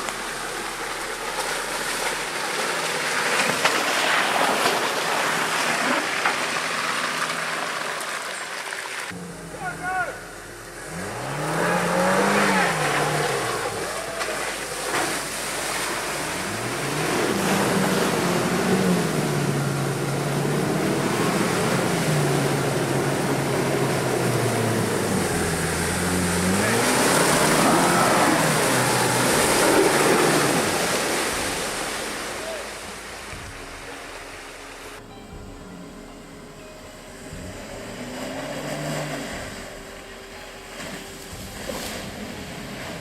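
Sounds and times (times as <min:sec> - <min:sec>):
car engine revving: 0:00.0 - 0:08.3, 0:08.9 - 0:43.0
steady rushing noise: 0:09.1 - 0:43.0.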